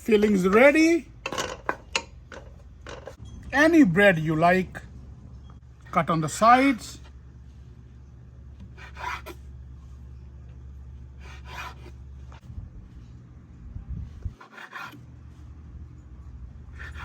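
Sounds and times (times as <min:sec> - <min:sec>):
steady low hum: 0:00.0 - 0:17.0
knife sawing bread: 0:08.8 - 0:09.4, 0:11.2 - 0:12.0, 0:14.4 - 0:15.0, 0:16.7 - 0:17.0.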